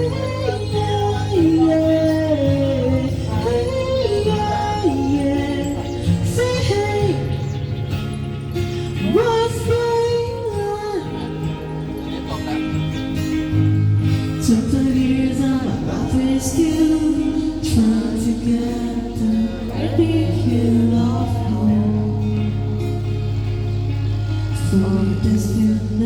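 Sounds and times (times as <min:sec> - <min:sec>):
person singing: 0:00.0 - 0:08.1, 0:14.3 - 0:23.1, 0:24.6 - 0:26.0.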